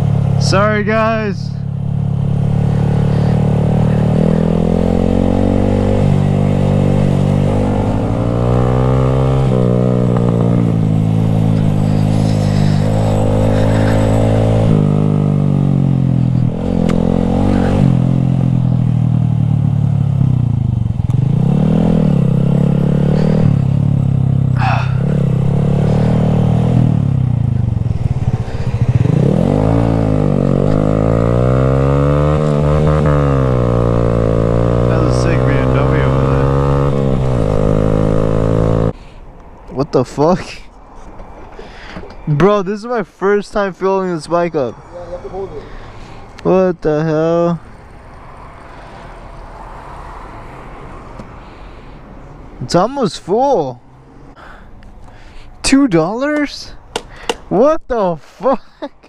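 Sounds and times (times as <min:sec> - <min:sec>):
motorcycle engine revving: 0:00.0 - 0:39.0.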